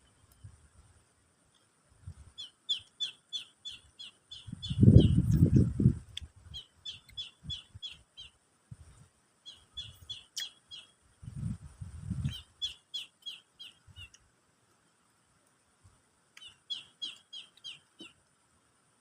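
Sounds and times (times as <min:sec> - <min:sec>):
bird chirping: 0:02.4 - 0:05.7, 0:06.4 - 0:08.4, 0:09.4 - 0:11.0, 0:12.2 - 0:14.2, 0:16.4 - 0:18.2.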